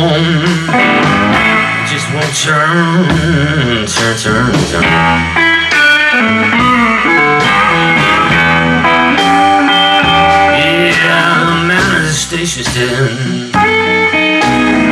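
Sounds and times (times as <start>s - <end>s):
blues guitar fills: 0.0s - 14.9s
drums: 0.0s - 14.9s
person singing: 0.0s - 14.9s
double bass: 2.8s - 5.6s, 6.2s - 14.9s.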